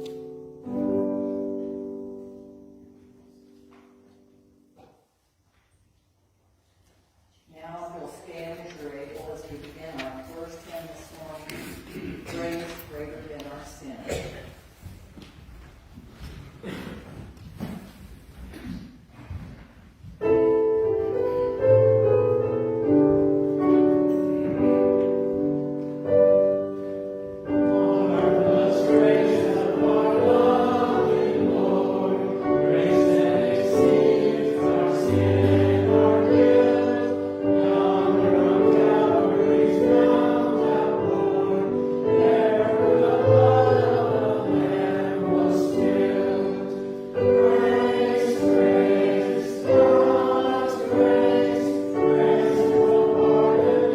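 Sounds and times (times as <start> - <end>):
choir singing sustained chords: 27.0 - 53.9.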